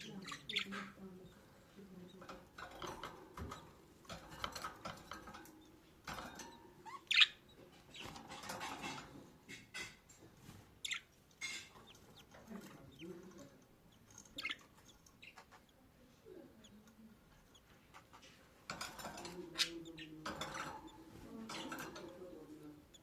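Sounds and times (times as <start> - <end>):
chicks cheeping: 10.8 - 15.8.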